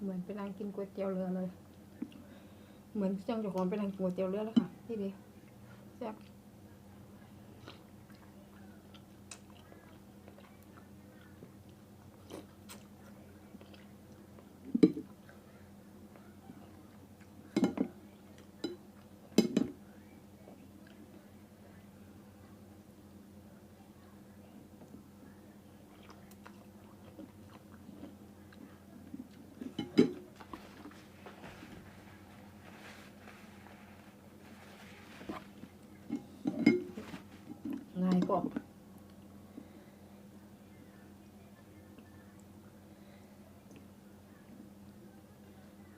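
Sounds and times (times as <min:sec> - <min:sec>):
person chewing: 0:08.9 - 0:15.4, 0:25.9 - 0:29.8.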